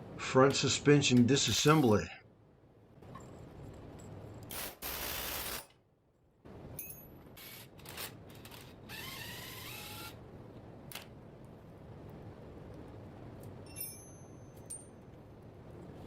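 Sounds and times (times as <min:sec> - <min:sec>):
metal clinks: 0:06.8 - 0:07.2, 0:13.6 - 0:15.2.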